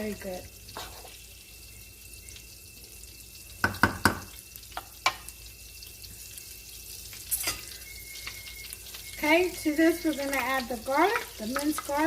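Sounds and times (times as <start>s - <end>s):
butter sizzling in a frying pan: 0.0s - 12.0s
utensil clinking on pan: 7.3s - 7.8s.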